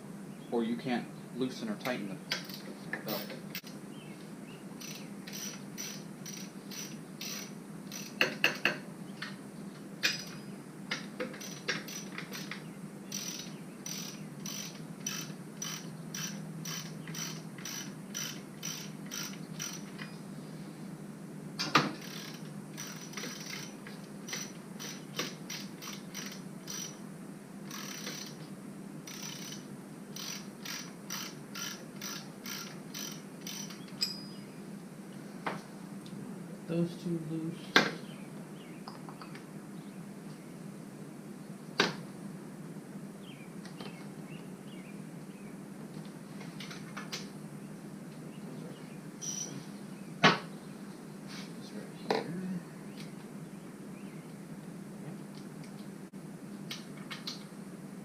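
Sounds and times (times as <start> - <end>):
faint steady hum: 0.0 - 58.0
ratchet wrench clicking: 4.8 - 8.7, 11.4 - 19.9, 22.0 - 27.0, 27.7 - 28.4, 29.1 - 29.6, 30.2 - 33.8.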